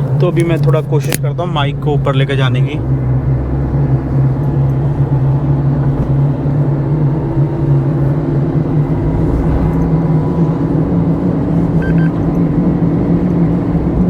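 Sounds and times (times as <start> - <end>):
roof rack droning hum: 0.0 - 14.0
wind roar: 2.8 - 14.0.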